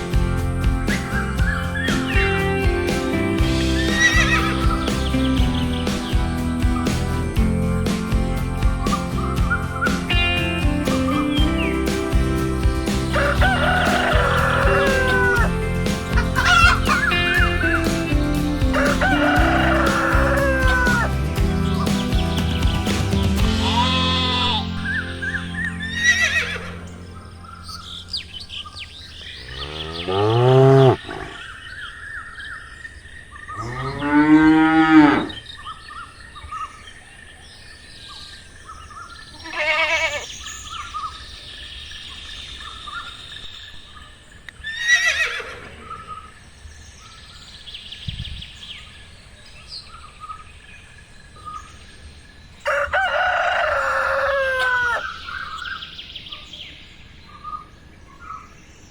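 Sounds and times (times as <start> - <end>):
birds chirping: 0.0 - 58.9
cattle mooing: 29.3 - 31.4, 33.6 - 35.4.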